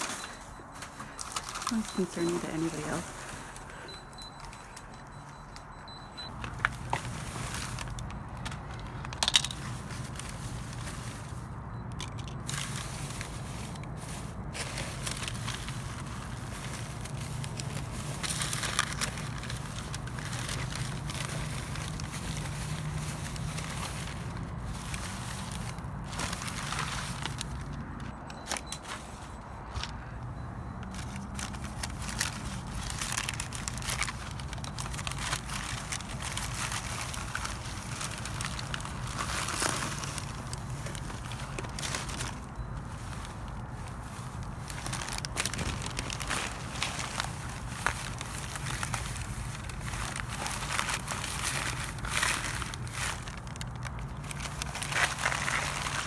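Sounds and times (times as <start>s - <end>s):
trash rummaged in dumpster: 0.0s - 56.0s.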